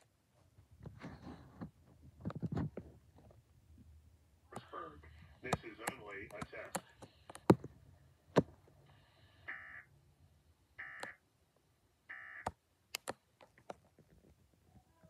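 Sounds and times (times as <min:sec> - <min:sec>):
sharp clicks: 0:10.9 - 0:11.2, 0:12.4 - 0:13.8.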